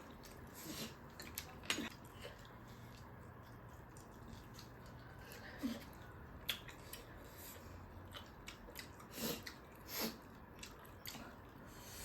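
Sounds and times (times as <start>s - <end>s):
chewing mouth clicks and smacks: 0.0s - 11.6s
breath huffs through nose: 9.1s - 10.2s.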